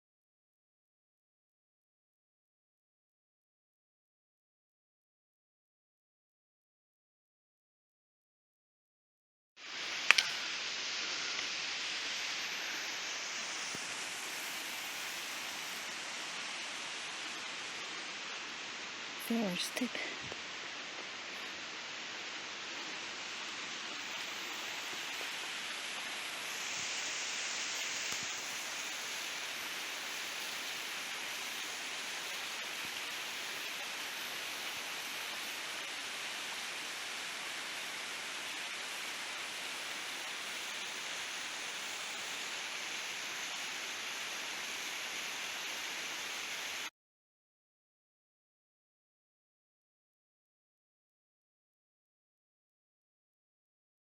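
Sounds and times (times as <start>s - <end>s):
steady rushing hiss: 9.6s - 46.9s.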